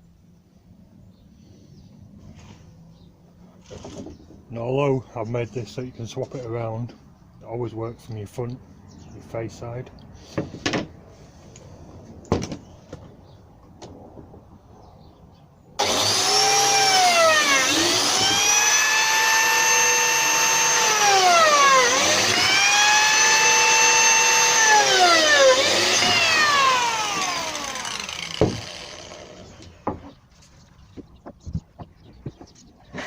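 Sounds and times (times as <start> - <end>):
power tool cutting plywood: 15.8 - 30.0.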